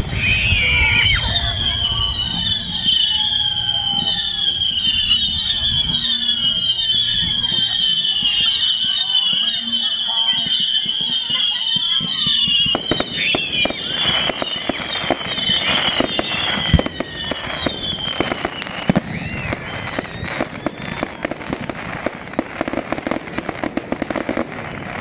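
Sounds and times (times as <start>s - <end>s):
fireworks crackling: 0.0s - 25.0s
fireworks whistles sliding down: 0.0s - 25.0s.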